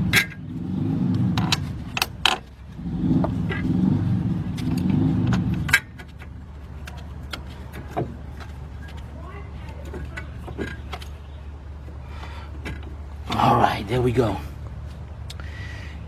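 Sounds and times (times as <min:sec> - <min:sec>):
metal tools clinking and scraping: 0:05.3 - 0:11.2.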